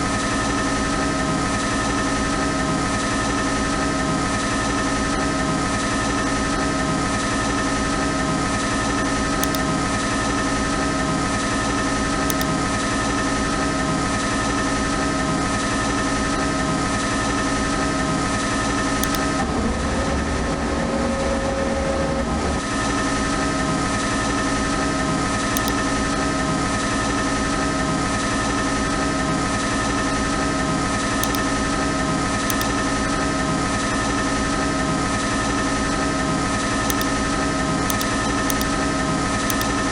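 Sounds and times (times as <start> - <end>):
low machine pulse: 19.0 - 23.1.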